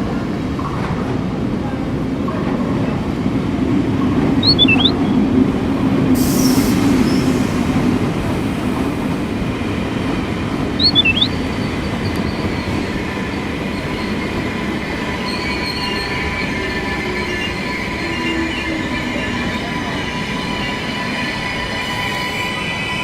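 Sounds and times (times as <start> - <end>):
train rumbling on track: 0.0 - 23.0
wheel squeal: 10.8 - 23.0.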